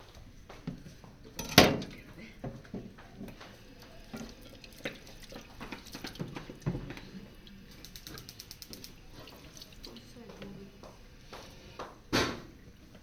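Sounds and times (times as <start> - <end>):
utensils and dishes clattering: 1.3 - 2.0
quick evenly spaced ticks: 7.7 - 9.0.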